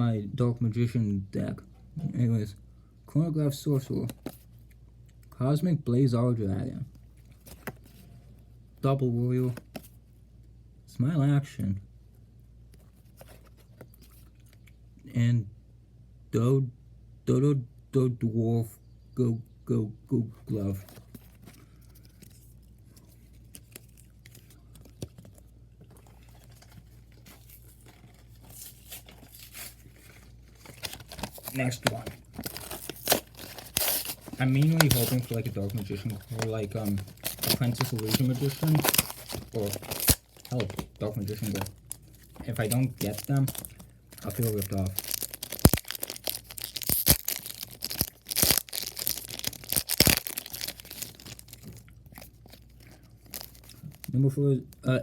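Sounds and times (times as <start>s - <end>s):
trading cards clicking and rustling: 20.8s - 54.1s
foil wrapper crinkling: 21.0s - 54.2s.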